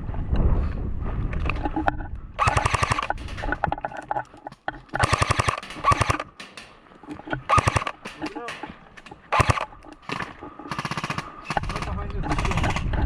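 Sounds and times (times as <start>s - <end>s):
airsoft guns firing bursts: 2.4s - 3.2s, 5.0s - 6.5s, 7.5s - 8.6s, 9.3s - 12.8s.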